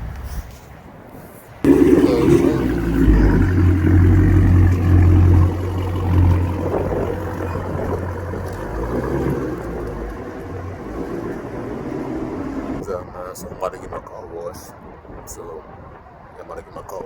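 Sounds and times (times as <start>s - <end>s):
car engine deep exhaust note: 1.6s - 12.8s.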